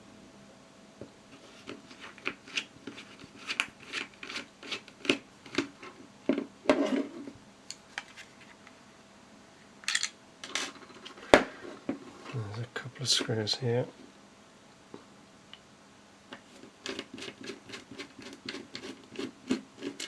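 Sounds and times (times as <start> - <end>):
screwdriver scraping on plastic: 1.4 - 6.0, 16.6 - 20.0.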